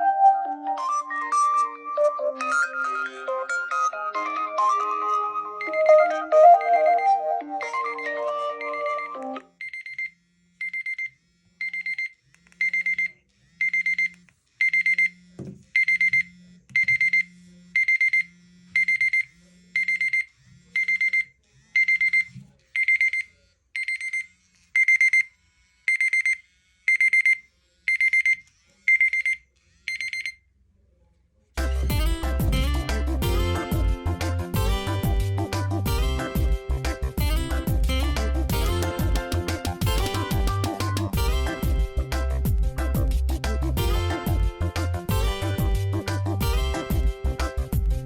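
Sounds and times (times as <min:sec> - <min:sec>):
phone alarm beeping: 0:05.4 - 0:15.2, 0:15.8 - 0:25.3, 0:25.9 - 0:30.4
knock: 0:15.4 - 0:15.6
low buzz: 0:31.6 - 0:48.0.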